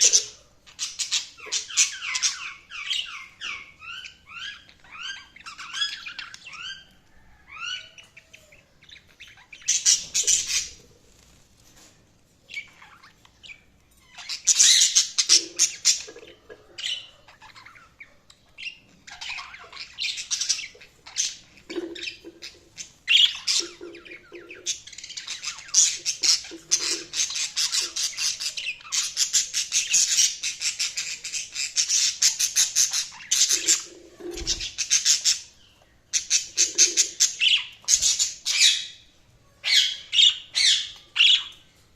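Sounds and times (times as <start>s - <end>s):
budgerigars chattering and warbling: 12.6s - 41.6s.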